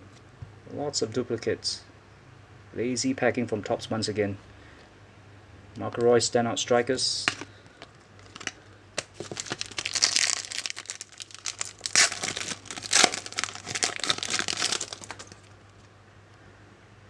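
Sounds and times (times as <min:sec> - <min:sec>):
wrappers crinkling and tearing: 0:08.2 - 0:15.6.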